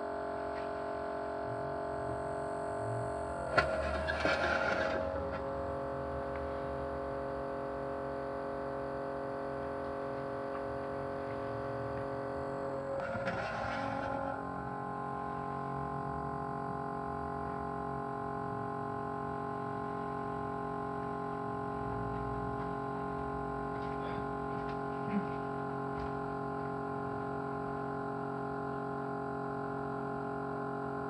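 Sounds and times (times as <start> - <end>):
small motor humming: 1.4 - 5.5.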